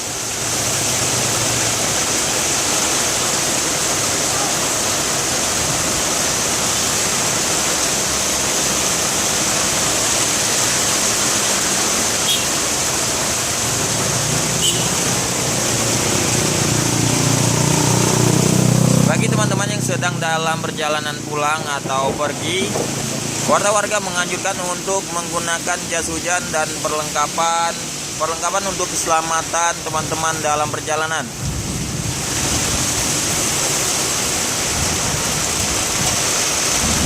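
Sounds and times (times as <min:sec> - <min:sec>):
heavy rain pouring: 0:00.0 - 0:37.0
vehicle engine humming: 0:12.0 - 0:19.1.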